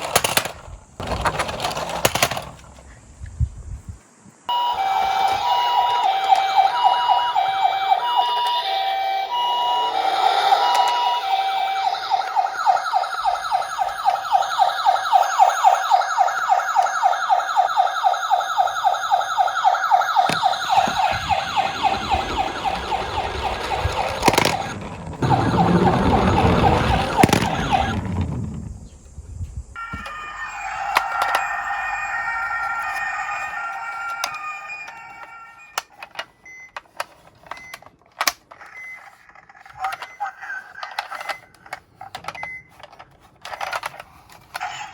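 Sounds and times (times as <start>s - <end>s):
toy vehicle rolling on plastic: 0.0s - 3.0s, 4.8s - 15.6s, 20.2s - 28.8s, 29.9s - 44.9s
toy siren warbling: 4.5s - 28.4s, 29.8s - 36.3s, 38.6s - 41.9s, 44.6s - 44.9s.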